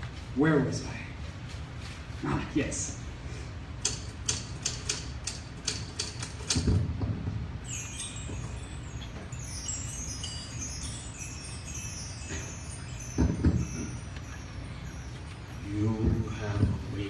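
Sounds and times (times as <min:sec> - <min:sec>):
typewriter keys struck: 0:03.8 - 0:06.8
shimmering magic tinkles: 0:07.6 - 0:17.0.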